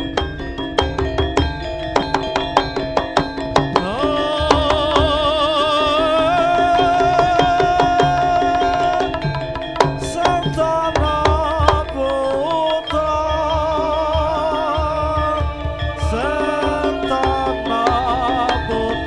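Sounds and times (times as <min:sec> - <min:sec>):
gamelan: 0:00.0 - 0:19.0
hand drum strokes: 0:00.0 - 0:19.0
wavering vibrato melody: 0:00.0 - 0:19.0.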